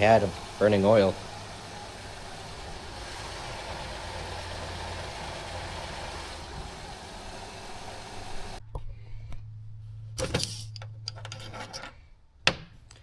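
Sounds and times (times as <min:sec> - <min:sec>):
minivan engine idling: 0:00.0 - 0:08.6.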